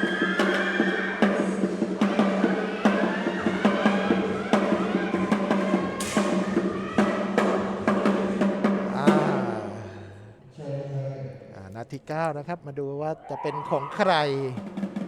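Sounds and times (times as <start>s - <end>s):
music with steady drum beat: 0.0s - 9.8s, 14.5s - 15.0s.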